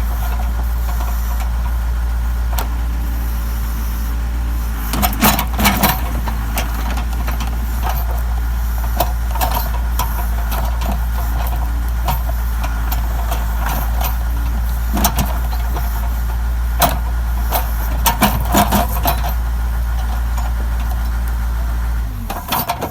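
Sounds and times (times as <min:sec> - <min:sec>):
diesel engine running: 0:00.0 - 0:22.9.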